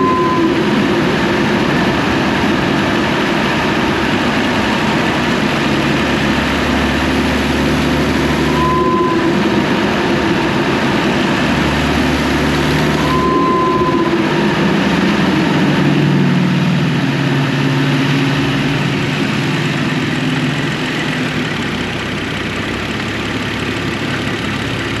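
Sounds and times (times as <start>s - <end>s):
short turbo whistle: 0.0s - 1.0s, 8.4s - 9.8s, 12.9s - 14.5s
car engine drone: 0.0s - 25.0s.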